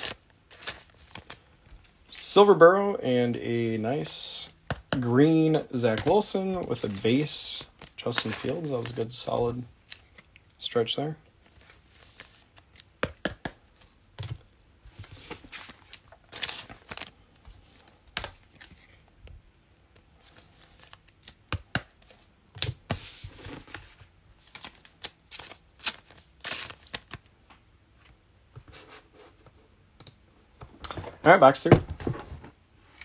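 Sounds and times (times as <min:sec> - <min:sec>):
cards clicking and tapping: 0:05.9 - 0:09.1, 0:12.8 - 0:13.6.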